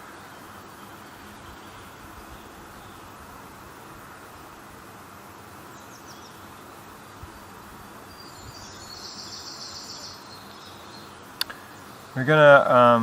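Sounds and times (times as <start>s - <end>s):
steady background hiss: 0.0s - 13.0s
faint bird chirps: 8.0s - 12.2s.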